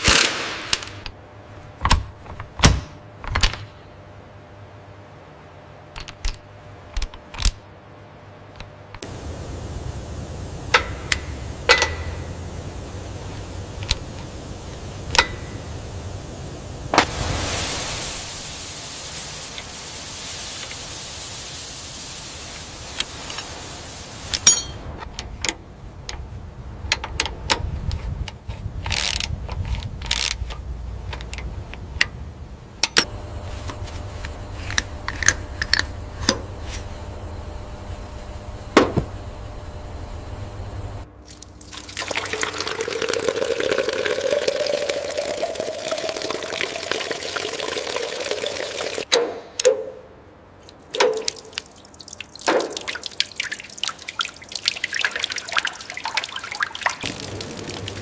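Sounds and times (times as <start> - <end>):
constant low hum: 0.0 - 58.0
steady hiss: 9.0 - 26.8, 28.1 - 49.1, 50.7 - 58.0.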